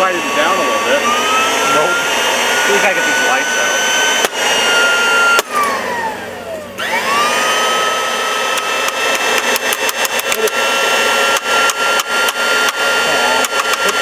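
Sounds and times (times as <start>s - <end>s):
vacuum cleaner motor whining: 0.0s - 14.0s
sharp clicks: 8.5s - 10.6s, 11.3s - 14.0s.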